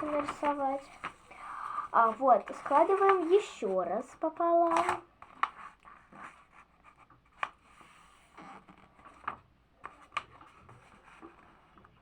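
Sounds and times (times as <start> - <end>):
paper rustling and sliding: 0.0 - 1.3, 2.0 - 12.0
paper crackles: 0.0 - 12.0.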